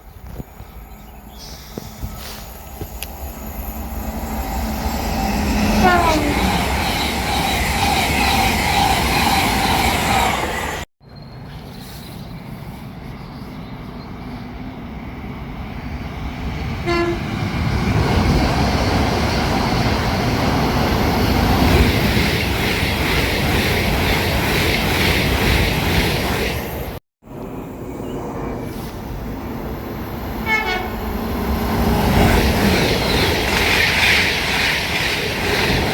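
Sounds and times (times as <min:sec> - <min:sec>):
train passing: 0:00.4 - 0:35.9
train horn toot: 0:05.6 - 0:06.8, 0:16.8 - 0:17.3, 0:30.4 - 0:31.1
wheel and rail noise: 0:29.5 - 0:35.9.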